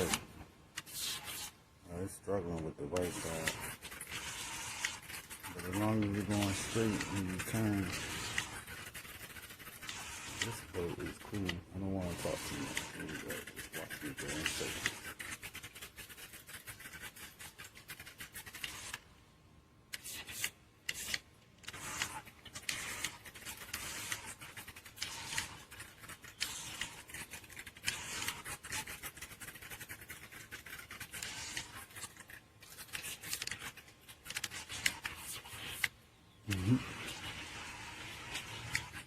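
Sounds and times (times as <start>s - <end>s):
rc boat propellers churning water: 3.0s - 15.8s.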